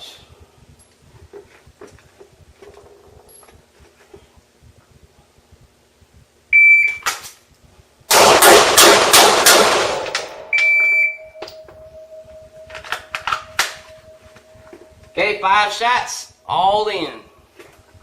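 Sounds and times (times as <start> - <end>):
faint steady hum: 0.0 - 18.0
shot timer beep: 6.6 - 7.0, 10.2 - 14.3
gunshots: 8.1 - 10.5.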